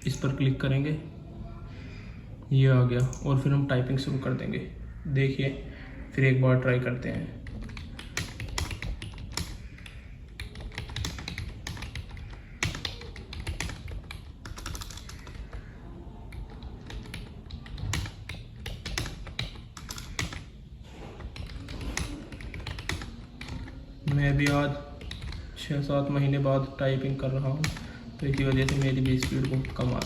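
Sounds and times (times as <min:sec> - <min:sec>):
typing on computer keyboard: 0:07.4 - 0:15.7, 0:16.3 - 0:25.6, 0:27.6 - 0:30.0.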